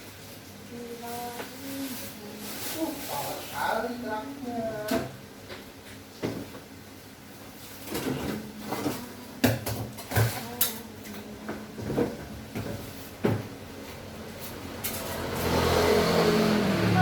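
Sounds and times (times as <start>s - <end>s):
knocks and clunks of objects: 11.5s - 13.6s.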